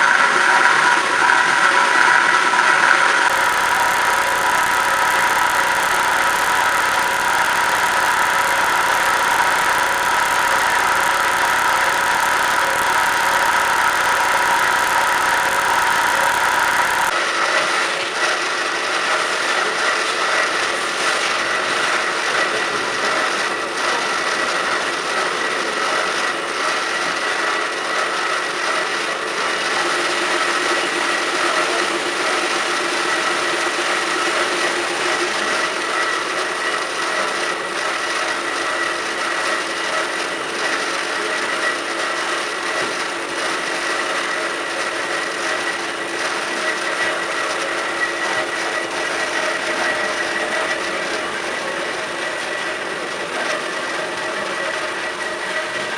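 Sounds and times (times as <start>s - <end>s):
band saw running: 3.3s - 17.1s
faint ticks: 3.3s - 17.1s.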